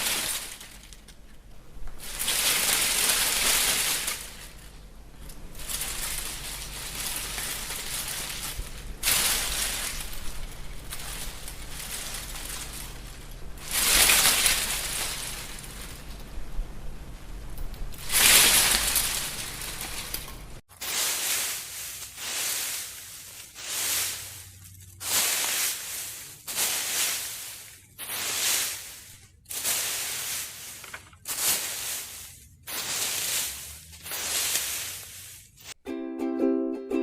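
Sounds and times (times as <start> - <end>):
dry leaves crunching: 0.0 - 16.6, 17.8 - 35.8.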